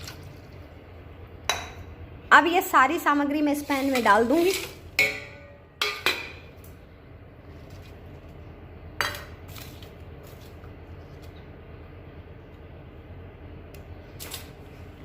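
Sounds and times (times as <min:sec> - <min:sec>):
steady low hum: 0:00.0 - 0:15.0
spices clinking into metal pan: 0:03.8 - 0:06.5.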